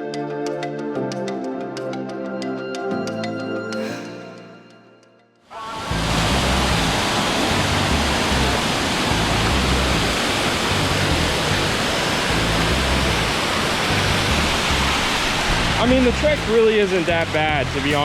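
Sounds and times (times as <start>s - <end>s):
waterfall rushing over rocks: 5.6s - 18.0s.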